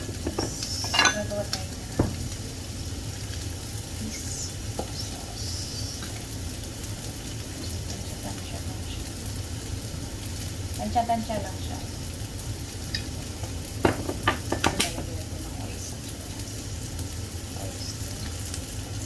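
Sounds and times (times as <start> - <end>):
utensil clinking against pan: 0.0 - 2.1
food sizzling in hot oil: 0.0 - 19.0.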